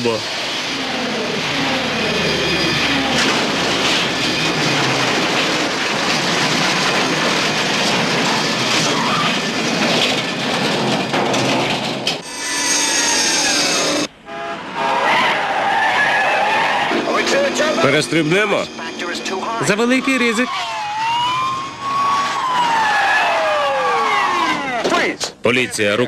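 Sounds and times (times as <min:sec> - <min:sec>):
train wheels clattering: 0:01.3 - 0:14.1
train horn: 0:14.2 - 0:15.4.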